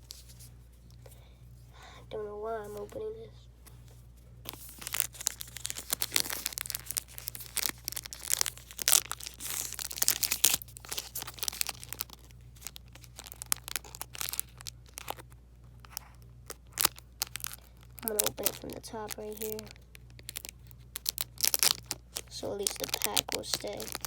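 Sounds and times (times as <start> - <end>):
card pack wrapper crinkling: 3.8 - 24.0.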